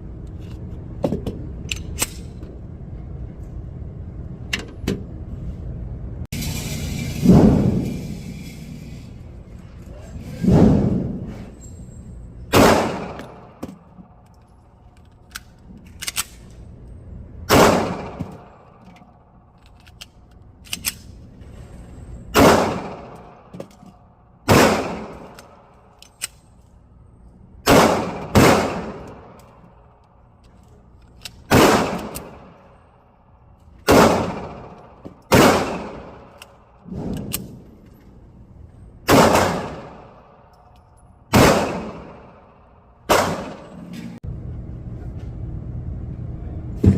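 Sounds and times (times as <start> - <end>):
pistol shots: 12.5 - 13.6, 17.5 - 18.5, 22.4 - 23.5, 24.4 - 25.6, 27.7 - 29.4, 31.5 - 32.6, 33.9 - 37.5, 39.1 - 40.4, 41.3 - 43.8.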